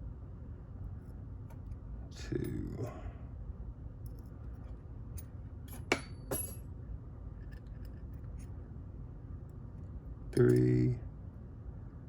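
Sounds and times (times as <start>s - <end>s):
metal pins clinking on hard surface: 5.7s - 6.6s.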